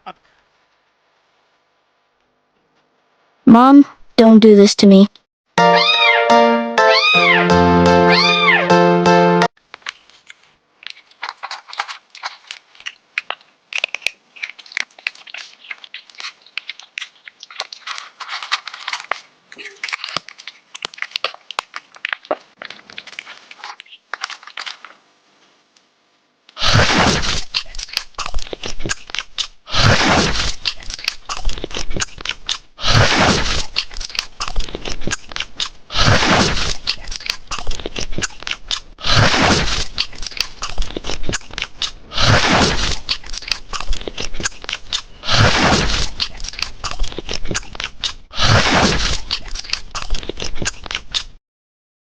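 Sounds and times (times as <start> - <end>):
crunchy chewing and biting: 9.8 - 25.0, 26.6 - 51.4.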